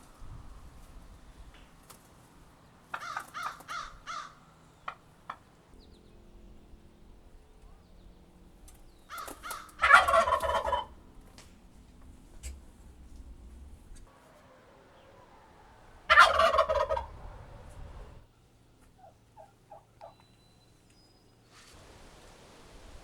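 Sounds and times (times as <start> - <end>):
turkey calling: 1.1 - 18.2, 18.8 - 23.0
turkey gobbling: 2.8 - 5.8, 8.7 - 18.2, 19.0 - 20.3.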